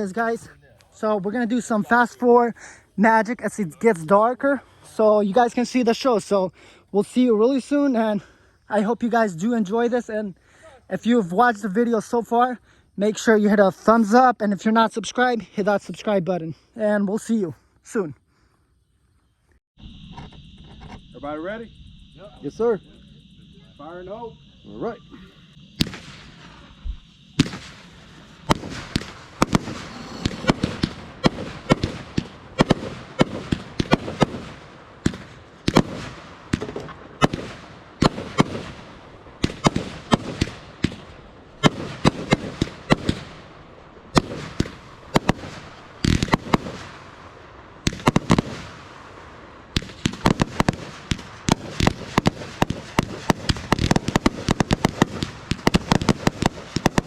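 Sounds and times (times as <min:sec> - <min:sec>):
fireworks firing sharp bangs: 0:24.4 - 0:57.0
firework crackling: 0:25.4 - 0:57.0.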